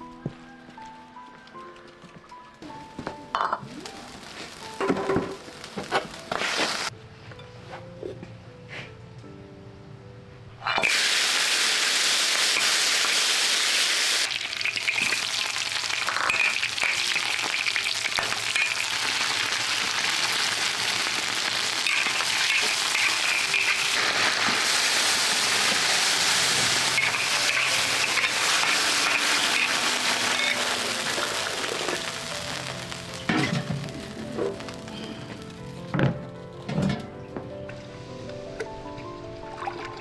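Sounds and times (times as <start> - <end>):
food sizzling in hot oil: 3.7 - 6.9, 10.7 - 34.9.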